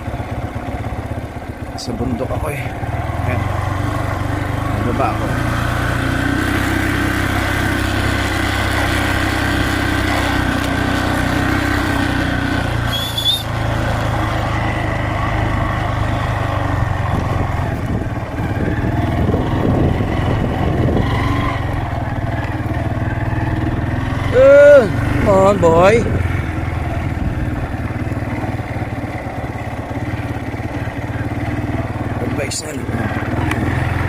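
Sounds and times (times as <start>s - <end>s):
small vehicle engine running: 0.0s - 34.0s
high squeak: 12.9s - 13.5s.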